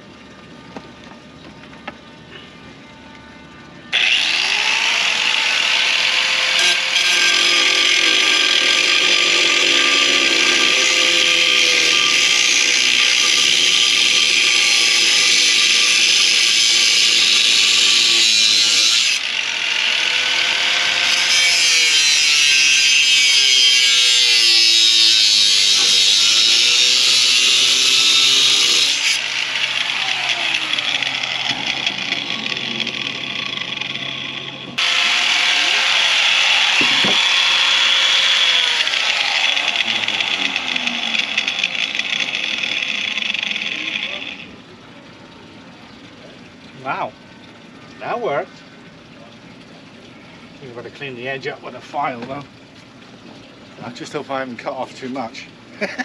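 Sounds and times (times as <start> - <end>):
angle grinder cutting metal: 4.0 - 44.5.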